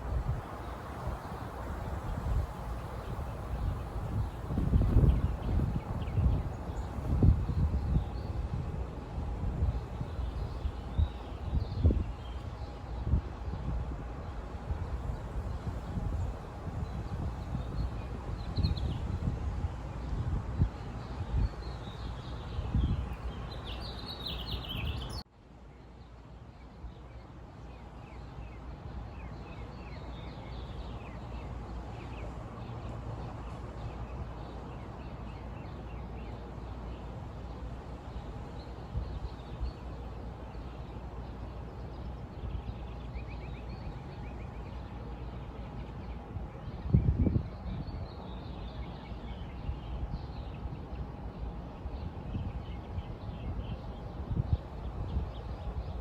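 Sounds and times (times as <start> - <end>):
wind buffeting microphone: 0.0 - 25.2, 37.0 - 56.0
small birds chirping: 20.0 - 25.2.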